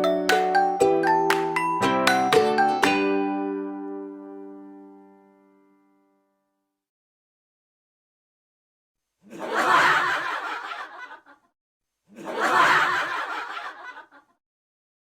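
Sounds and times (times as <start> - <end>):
burst of laughter: 9.2 - 11.5, 12.1 - 14.4.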